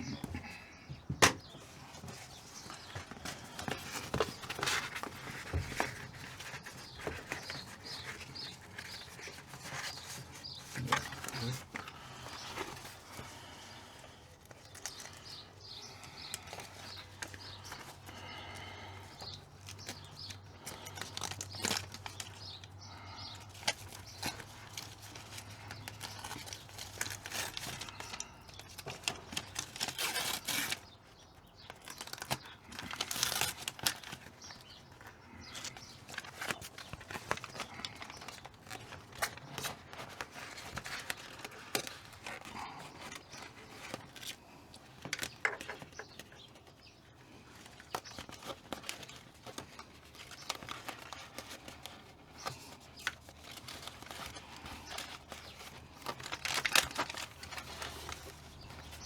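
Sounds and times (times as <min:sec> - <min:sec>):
insulation sheets rustling and crinkling: 0:00.0 - 0:59.0
tearing sounds: 0:29.4 - 0:30.8.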